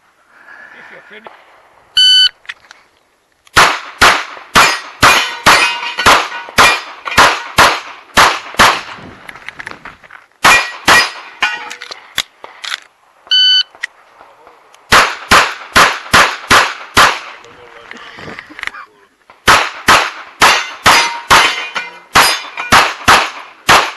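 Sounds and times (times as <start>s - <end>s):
pistol shots: 3.5s - 9.0s, 10.4s - 11.5s, 14.9s - 17.4s, 19.4s - 23.9s.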